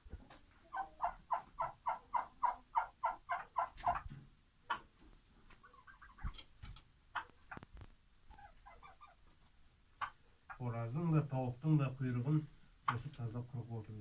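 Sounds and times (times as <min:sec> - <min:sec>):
chicken clucking: 0:00.0 - 0:10.8, 0:12.8 - 0:13.4
chicken squawking: 0:00.6 - 0:04.1, 0:05.6 - 0:06.4, 0:08.3 - 0:09.2.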